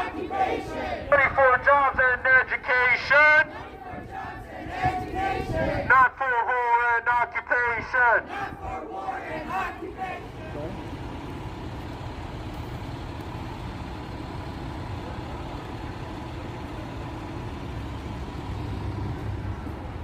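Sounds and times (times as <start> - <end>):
vehicle engine idling: 9.4 - 20.0.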